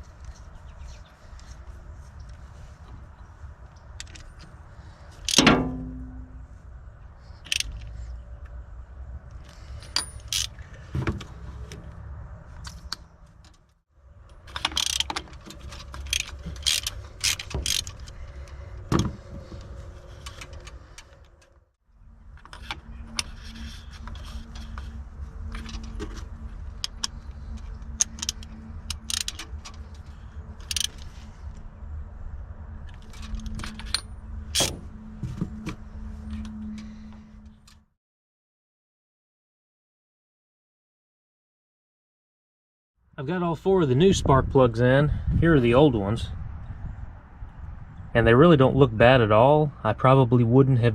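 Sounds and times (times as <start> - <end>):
low hum: 0.0 - 13.3, 14.0 - 37.9
socket ratchet clicking: 15.8 - 18.2, 27.8 - 29.8, 30.6 - 31.1.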